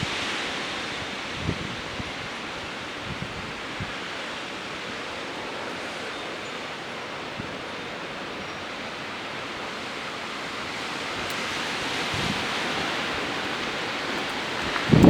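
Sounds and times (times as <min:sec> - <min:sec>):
wind rushing through trees: 0:00.0 - 0:15.0
wind buffeting microphone: 0:10.3 - 0:15.0.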